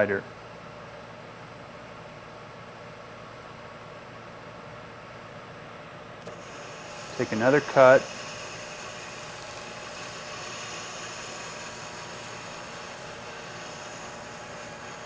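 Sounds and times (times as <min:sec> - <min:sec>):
metal lathe hum and hiss: 0:06.2 - 0:15.0.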